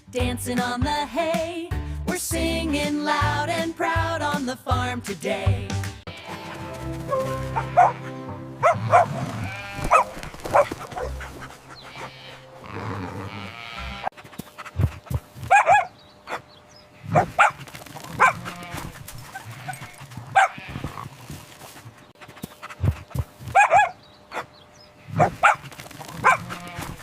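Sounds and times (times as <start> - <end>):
sheep bleating: 6.1 - 14.1, 18.2 - 21.4, 26.2 - 27.0
dog barking: 7.1 - 8.0, 8.6 - 11.3, 15.4 - 16.5, 17.1 - 18.6, 20.3 - 20.7, 23.5 - 24.5, 25.2 - 26.7.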